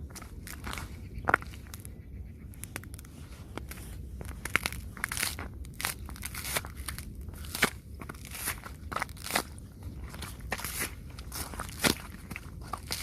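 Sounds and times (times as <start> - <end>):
tapping on icy snow: 2.8 - 13.0.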